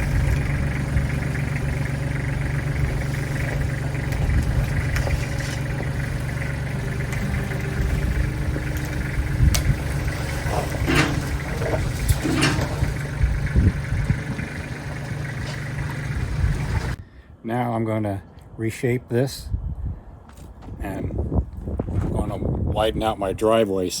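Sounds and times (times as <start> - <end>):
engine idling: 0.0 - 17.0
short clanks and scrapes: 9.6 - 13.2.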